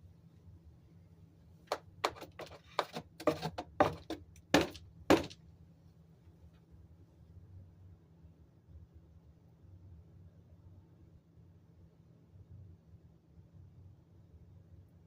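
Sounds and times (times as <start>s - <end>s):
faint low hum: 0.0s - 15.0s
knocks and clatters: 1.7s - 5.4s.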